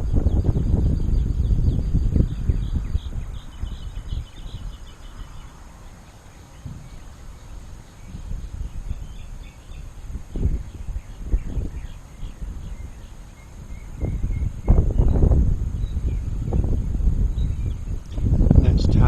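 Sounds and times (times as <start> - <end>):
faint high bird chirps: 0.0 - 18.2
wind rumbling on microphone: 0.0 - 19.0.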